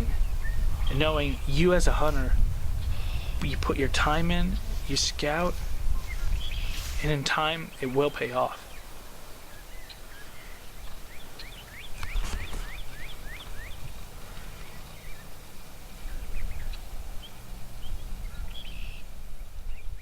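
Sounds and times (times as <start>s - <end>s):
steady low rumble: 0.0s - 9.8s.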